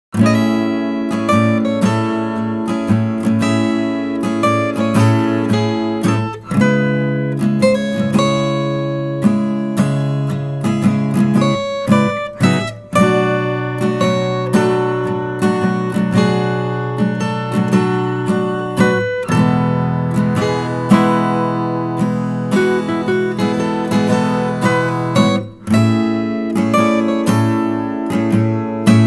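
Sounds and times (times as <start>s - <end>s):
acoustic guitar strumming chords: 0.2s - 29.0s.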